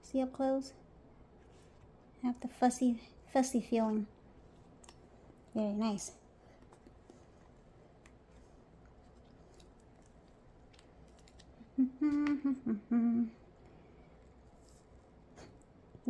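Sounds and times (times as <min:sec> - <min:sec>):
woman humming while eating: 0:11.6 - 0:13.5.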